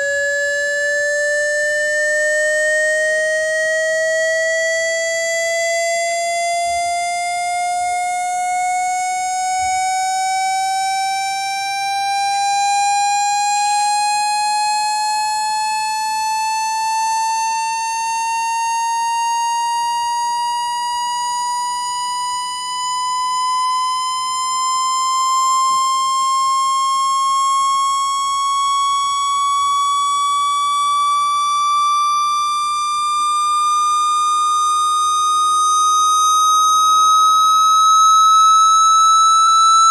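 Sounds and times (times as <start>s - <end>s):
buzzy electronic tone rising: 32.7s - 39.9s.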